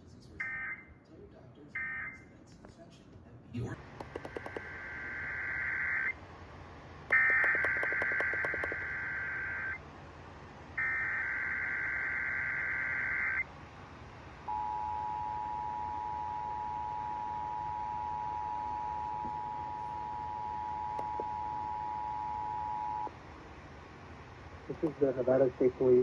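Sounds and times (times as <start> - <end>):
crackling clicks: 4.0 - 4.8, 7.1 - 9.1
warbling digital data tones: 7.1 - 9.8
steady two-tone attention signal: 14.5 - 23.1.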